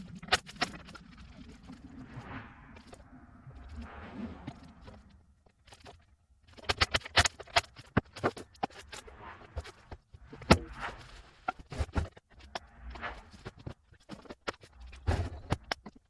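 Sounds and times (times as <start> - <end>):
metal scraping: 0.0 - 15.9.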